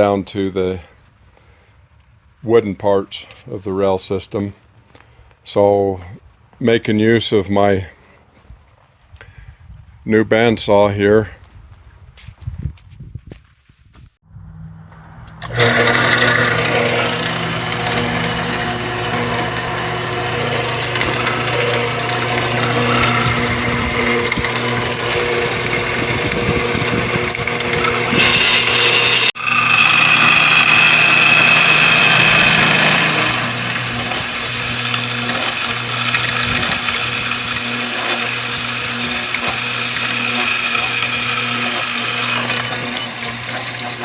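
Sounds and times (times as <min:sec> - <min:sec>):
bandsaw motor hum: 0:15.3 - 0:44.0
saw blade whining in metal: 0:15.4 - 0:44.0.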